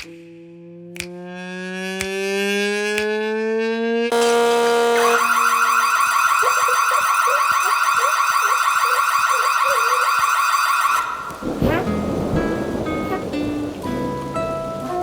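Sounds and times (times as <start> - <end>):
warbling electronic siren tone: 4.1 - 11.8.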